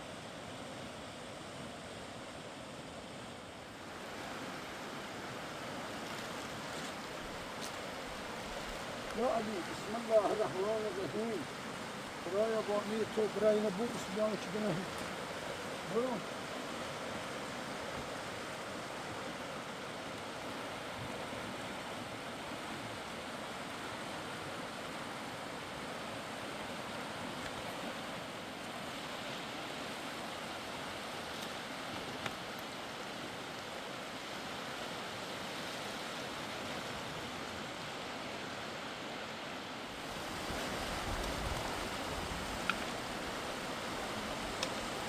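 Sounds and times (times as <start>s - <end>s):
river water rushing: 0.0s - 45.0s
faint tick: 44.6s - 44.8s.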